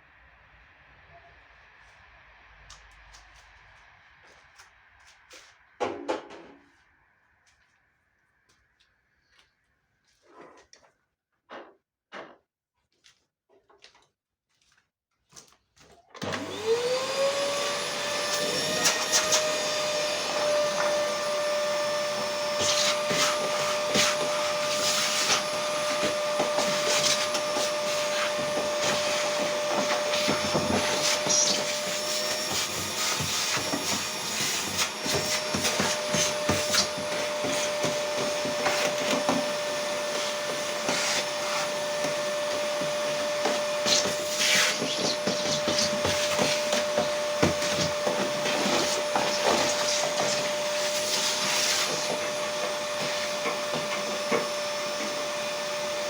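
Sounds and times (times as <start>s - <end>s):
electric motor whine: 16.2s - 56.0s.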